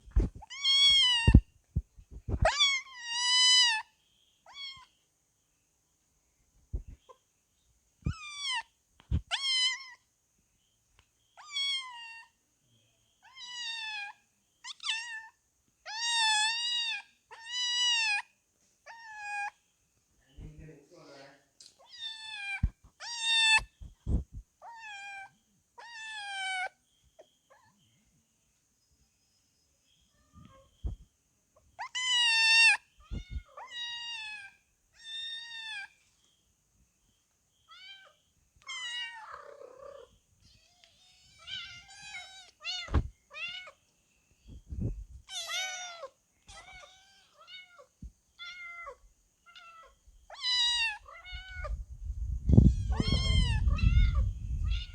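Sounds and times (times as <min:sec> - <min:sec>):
kitten meowing: 0:00.3 - 0:01.5, 0:02.2 - 0:03.8, 0:08.0 - 0:10.0, 0:13.2 - 0:15.3, 0:15.9 - 0:18.2, 0:21.8 - 0:26.7, 0:31.8 - 0:35.9, 0:37.7 - 0:43.8, 0:45.2 - 0:51.8, 0:52.5 - 0:54.9.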